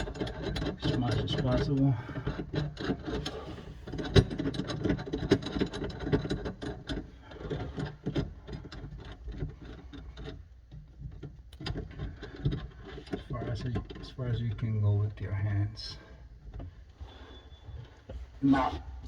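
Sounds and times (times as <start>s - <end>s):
small metallic clicks and rattles: 0.0s - 14.8s.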